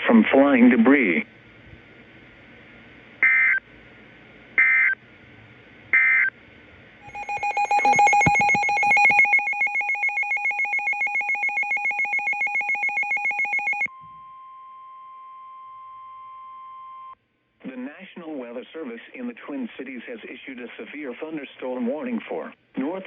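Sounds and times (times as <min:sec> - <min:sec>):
rapidly pulsing alarm beep: 0:03.2 - 0:03.6, 0:04.6 - 0:05.0, 0:06.0 - 0:06.3, 0:07.0 - 0:13.9
steady warning alarm tone: 0:04.6 - 0:05.0, 0:06.0 - 0:06.3, 0:07.0 - 0:13.9
screeching data signal bursts: 0:07.0 - 0:13.9.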